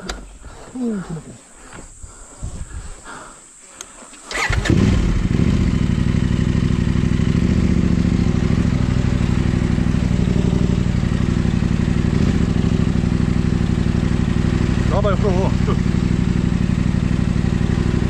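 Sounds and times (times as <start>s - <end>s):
motorcycle engine idling: 4.3s - 18.0s.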